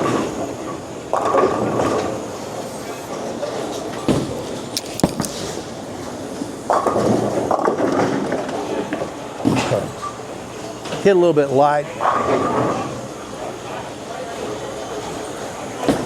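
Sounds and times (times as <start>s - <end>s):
bowling ball rolling: 0.0s - 11.1s, 12.0s - 13.2s.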